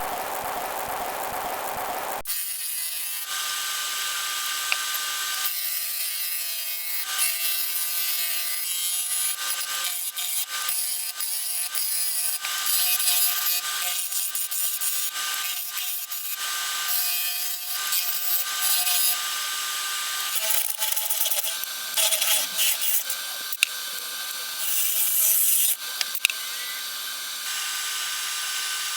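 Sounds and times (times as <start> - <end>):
turning tool cutting spinning wood: 0.0 - 28.9
lathe motor whine: 17.8 - 28.9.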